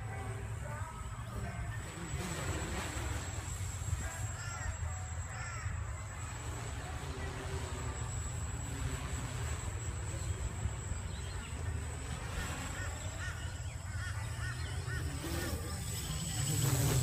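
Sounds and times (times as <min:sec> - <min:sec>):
bird calling: 0:04.0 - 0:06.3, 0:10.1 - 0:17.0.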